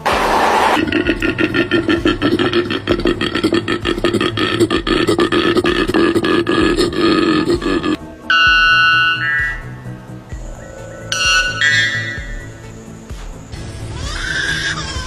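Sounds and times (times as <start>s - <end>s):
background music with bass beat: 0.2s - 13.9s
animal croaking rattling call: 0.8s - 8.0s, 10.3s - 12.9s.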